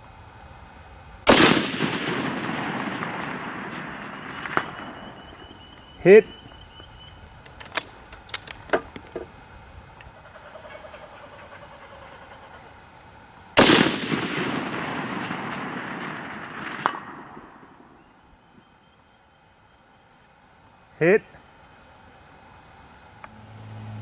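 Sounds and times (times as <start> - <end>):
rifle shot: 1.2 - 9.2, 13.6 - 18.5
faint sharp crack: 1.3 - 9.4, 13.6 - 18.7
light clicks: 4.4 - 10.2.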